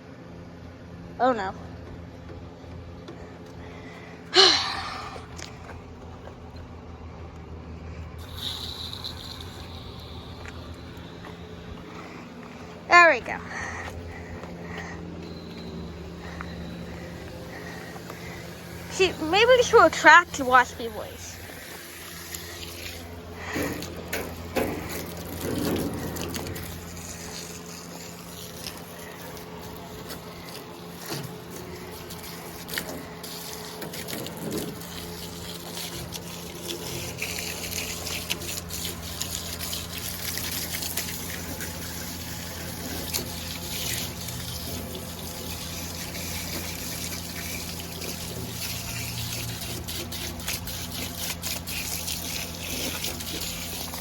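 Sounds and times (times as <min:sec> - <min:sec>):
low hum: 0:00.7 - 0:30.6
hose water spraying and splashing: 0:08.2 - 0:54.0.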